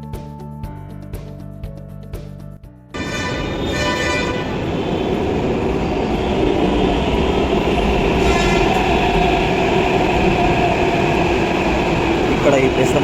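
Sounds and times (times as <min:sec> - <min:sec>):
high whine: 0:03.0 - 0:13.0
train rumble and hiss: 0:03.0 - 0:13.0.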